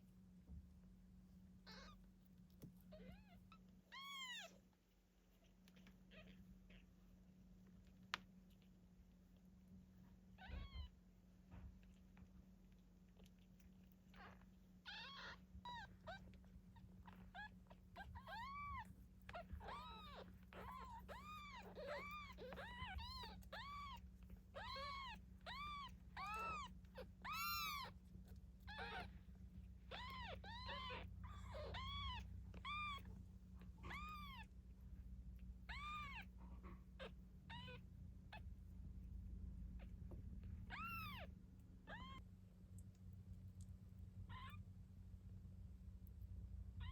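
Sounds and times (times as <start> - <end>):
steady low hum: 0.0 - 46.9
kittens mewing: 14.1 - 34.6, 35.6 - 38.5, 40.6 - 42.2.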